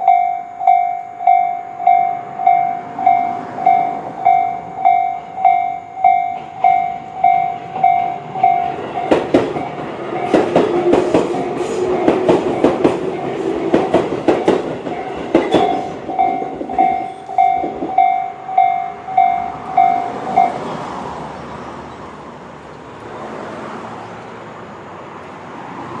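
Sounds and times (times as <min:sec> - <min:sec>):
level-crossing alarm bell ringing: 0:00.0 - 0:20.8
train rumble: 0:00.0 - 0:26.0
train wheels clacking over rail joints: 0:06.1 - 0:20.8.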